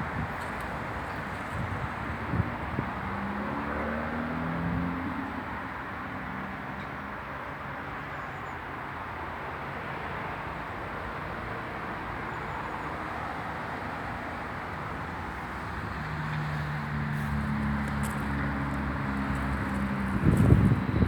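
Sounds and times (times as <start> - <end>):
wind gusts on microphone: 0.0 - 3.7, 16.6 - 21.0
steady outdoor rumble: 0.0 - 7.7, 13.4 - 21.0
engine low hum: 15.0 - 21.0.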